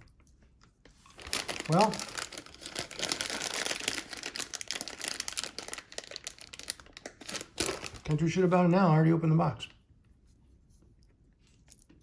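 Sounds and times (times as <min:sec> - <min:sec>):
trading cards crinkling and rustling: 0:00.8 - 0:08.6.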